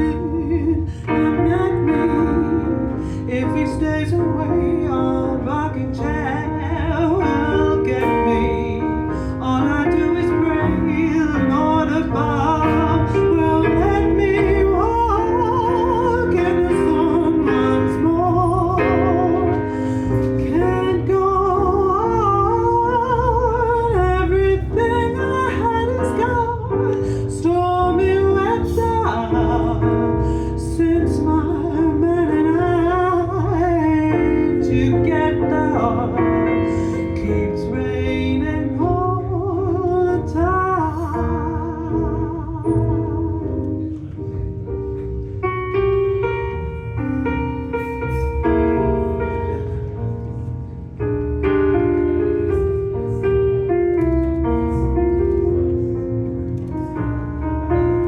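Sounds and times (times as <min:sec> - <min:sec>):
person singing with vibrato: 0:00.0 - 0:44.2
bass line: 0:00.0 - 0:58.0
piano: 0:00.0 - 0:58.0.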